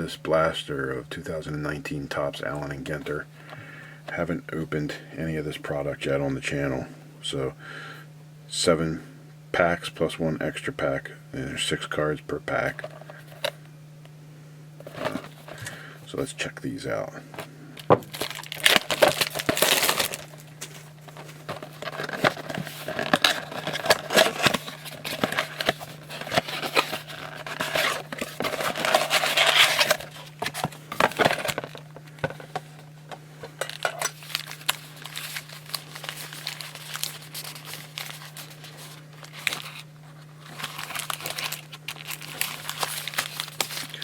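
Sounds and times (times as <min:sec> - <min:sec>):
low electrical hum: 0:00.0 - 0:44.0
cardboard rustling: 0:14.8 - 0:15.8, 0:17.4 - 0:44.0
plastic wrapping crinkling and tearing: 0:17.8 - 0:32.4, 0:33.6 - 0:44.0.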